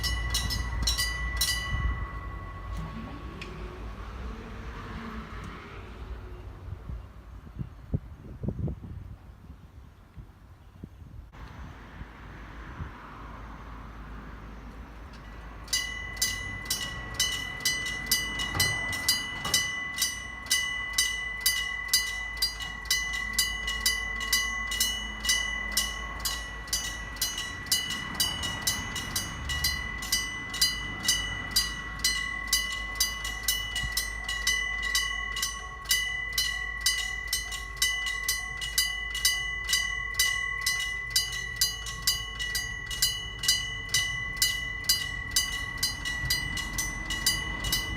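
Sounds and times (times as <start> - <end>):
level crossing bells ringing: 0.0 - 5.0, 15.2 - 47.9.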